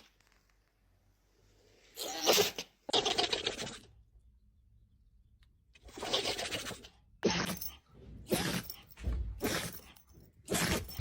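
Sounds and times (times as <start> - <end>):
dog sneezing: 2.0 - 2.7.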